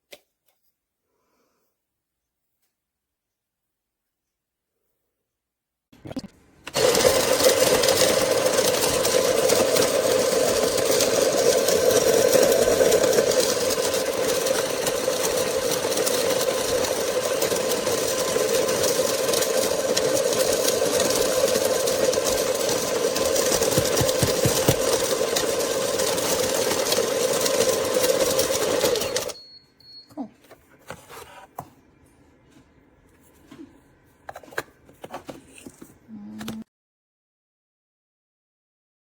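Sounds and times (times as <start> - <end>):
coffee grinder motor running: 6.7 - 29.4.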